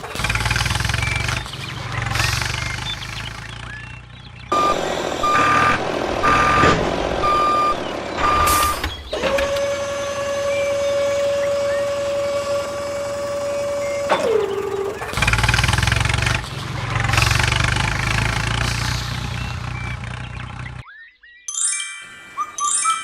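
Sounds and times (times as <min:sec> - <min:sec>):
low vehicle rumble: 0:00.0 - 0:20.8
vehicle reversing alarm beeping: 0:00.6 - 0:16.2, 0:18.1 - 0:20.9.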